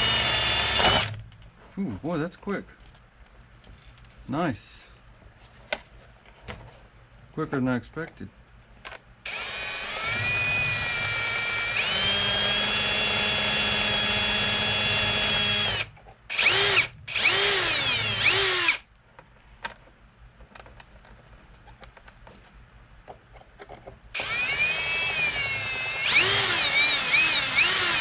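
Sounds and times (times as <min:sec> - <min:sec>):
power drill whining: 0:00.0 - 0:01.2, 0:09.3 - 0:18.8, 0:24.2 - 0:28.0.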